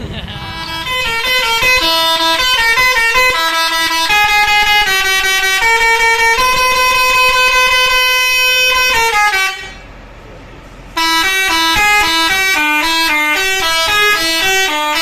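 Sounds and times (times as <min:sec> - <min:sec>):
bus air horn playing tune: 0:00.3 - 0:09.9, 0:11.0 - 0:15.0.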